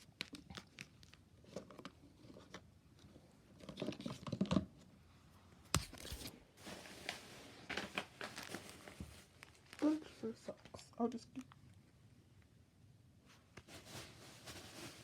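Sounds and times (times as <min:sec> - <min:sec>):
plastic packaging rustling: 0:05.8 - 0:10.2, 0:13.7 - 0:15.0.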